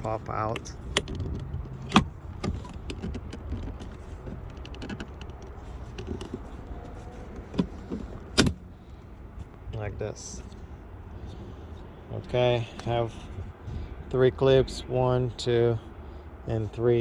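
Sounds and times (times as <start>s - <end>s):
plastic trim clicking as pried loose: 0.9s - 6.4s.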